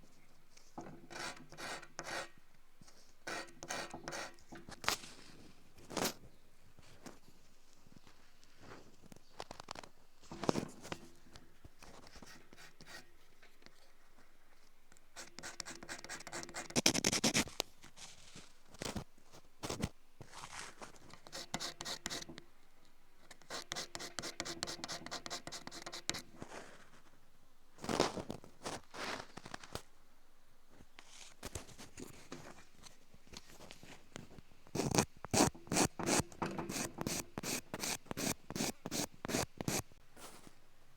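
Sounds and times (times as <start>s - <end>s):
scratching and scraping: 15.2s - 22.4s, 27.8s - 29.9s, 30.9s - 40.5s.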